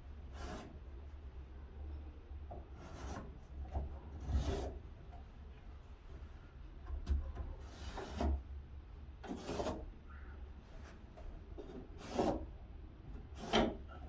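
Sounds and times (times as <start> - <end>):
scraping strokes across wood: 0.2 - 0.8, 2.7 - 3.4, 7.6 - 8.4, 9.2 - 9.9, 11.6 - 12.5, 13.3 - 13.8.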